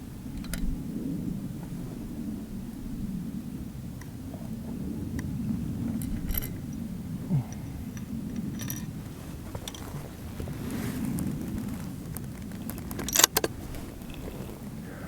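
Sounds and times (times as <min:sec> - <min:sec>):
low wind rumble: 0:00.0 - 0:15.0
light metallic clinks: 0:05.9 - 0:06.8, 0:07.4 - 0:10.5, 0:12.2 - 0:14.7.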